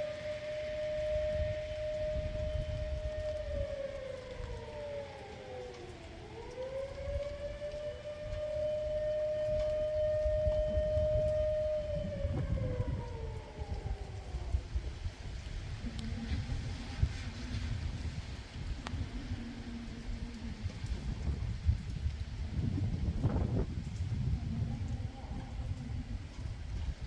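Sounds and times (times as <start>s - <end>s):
distant wailing warning siren: 0.0s - 27.0s.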